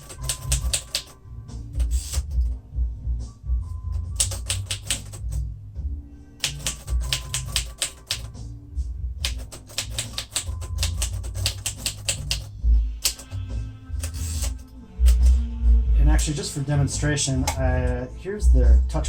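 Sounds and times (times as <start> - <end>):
manual typewriter keystrokes: 0.0 - 1.2, 1.8 - 2.6, 3.9 - 5.4, 6.4 - 8.4, 9.2 - 15.4.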